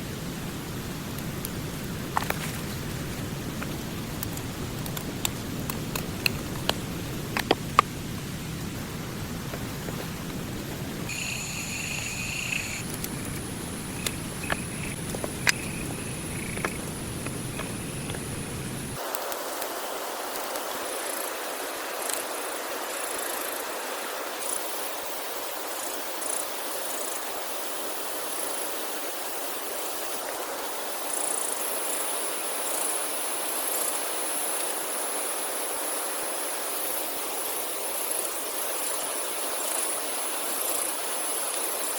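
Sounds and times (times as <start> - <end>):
thin high-pitched whine: 11.1 - 22.6.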